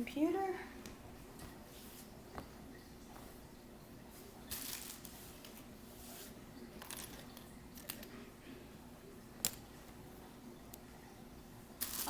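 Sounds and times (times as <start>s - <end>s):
plastic toys rustling and clicking: 4.5s - 5.7s, 6.8s - 8.2s, 11.8s - 12.0s.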